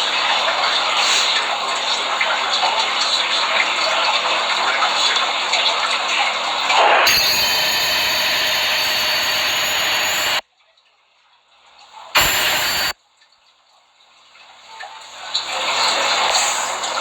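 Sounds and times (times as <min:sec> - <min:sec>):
loud harsh distorted noise: 0:07.0 - 0:10.4, 0:12.2 - 0:13.0.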